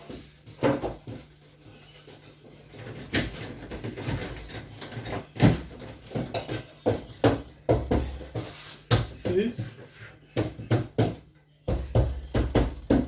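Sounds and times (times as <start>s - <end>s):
fridge parts scraping and clattering: 0.0s - 8.4s.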